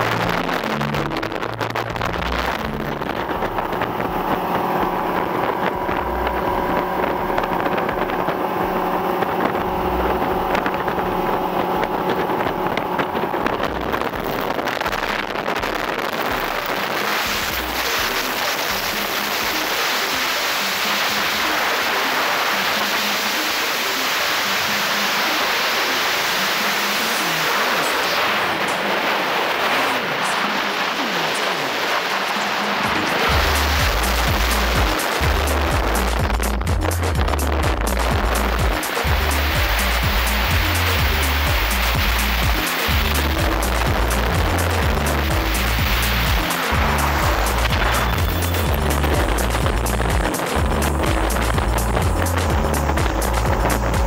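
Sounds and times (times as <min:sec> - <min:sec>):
motorboat engine hum: 0:00.0 - 0:54.0
rushing of wind and water: 0:00.0 - 0:54.0
wind buffeting microphone: 0:00.0 - 0:54.0.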